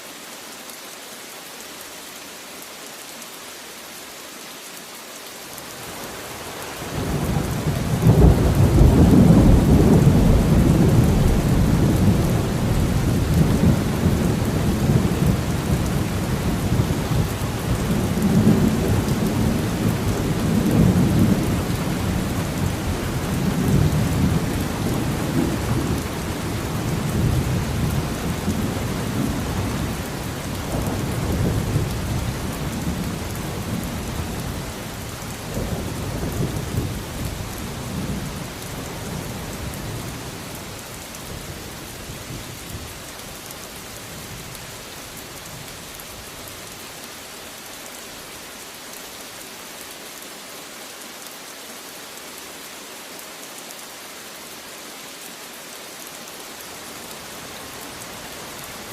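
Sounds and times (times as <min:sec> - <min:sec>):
steady rain: 0:00.0 - 0:58.9.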